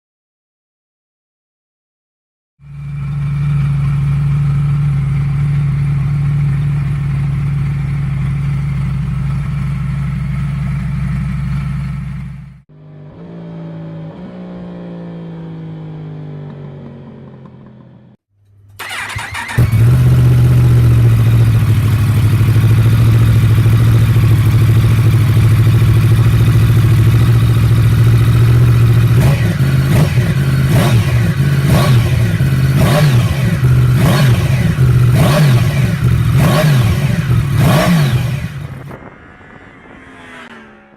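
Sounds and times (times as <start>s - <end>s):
motorcycle engine idling: 2.6s - 12.6s, 18.8s - 39.0s.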